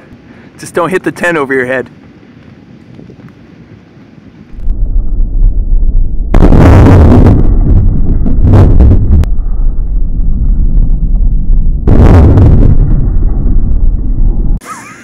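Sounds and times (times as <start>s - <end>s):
steady low rumble: 0.0s - 14.6s.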